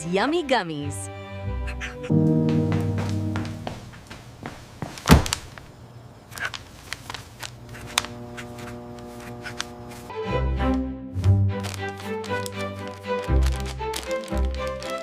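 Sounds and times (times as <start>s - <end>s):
soft background music chords: 0.0s - 3.9s
sharp thud: 5.1s - 5.5s.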